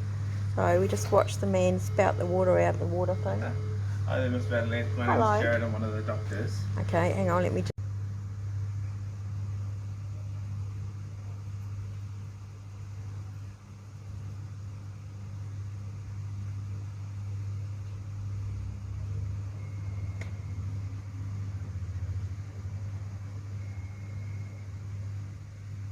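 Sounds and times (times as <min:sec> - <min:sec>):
low mechanical hum: 0:00.0 - 0:25.9
click: 0:20.2 - 0:20.4.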